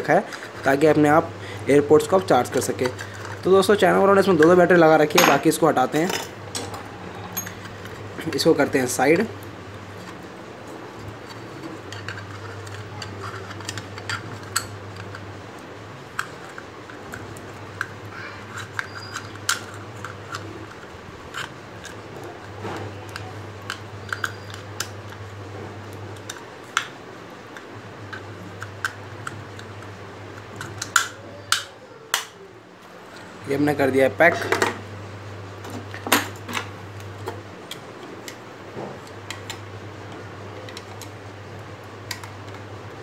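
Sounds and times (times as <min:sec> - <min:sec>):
steady low hum: 0:00.0 - 0:43.0
small plastic parts clicking: 0:11.2 - 0:15.2, 0:16.1 - 0:22.0, 0:30.4 - 0:32.3.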